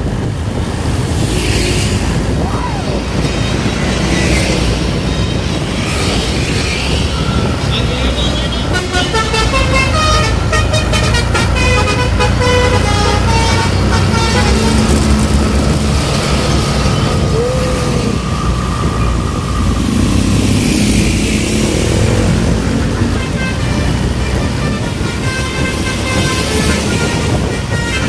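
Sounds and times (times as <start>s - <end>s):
bus engine running: 0.0s - 28.0s
bus horn playing a tune: 7.8s - 17.2s, 22.5s - 28.0s.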